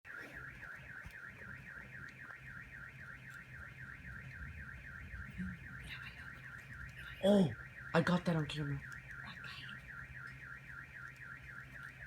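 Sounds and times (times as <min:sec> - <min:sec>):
distant car alarm warbling: 0:00.0 - 0:12.0.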